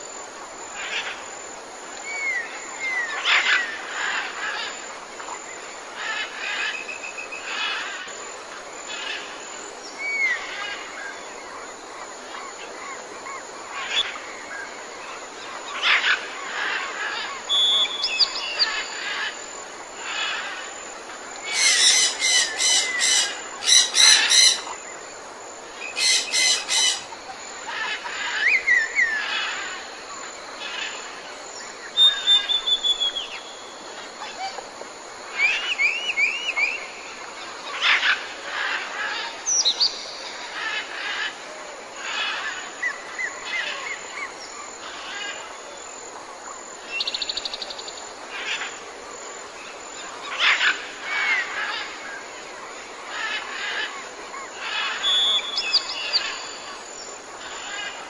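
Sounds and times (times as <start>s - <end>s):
steady hiss: 0.0s - 58.0s
bird trill: 21.5s - 24.8s, 26.0s - 27.1s
harsh bird calls: 21.5s - 24.8s, 25.9s - 29.6s
bird whistles and chirps: 32.0s - 33.3s.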